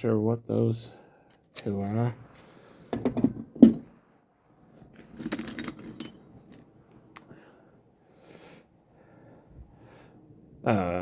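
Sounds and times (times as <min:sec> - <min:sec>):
metal hand tools clinking: 0:05.1 - 0:06.6.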